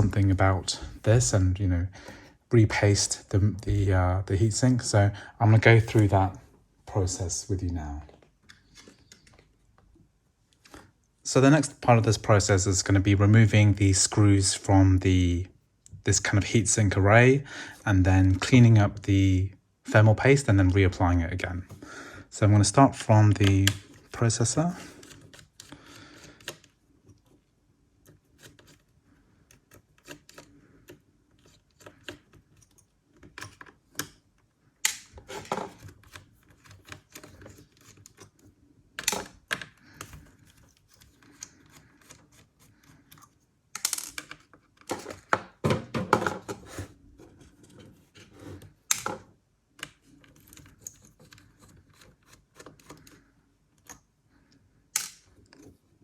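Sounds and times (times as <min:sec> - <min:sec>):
clatter of small parts: 0:43.1 - 0:46.6.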